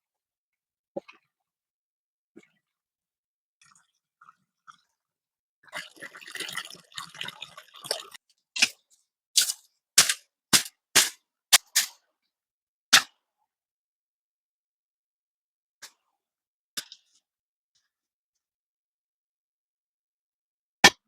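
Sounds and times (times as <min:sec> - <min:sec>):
tool scraping and crunching rock: 0:09.4 - 0:12.0
tool striking rock: 0:09.4 - 0:12.0.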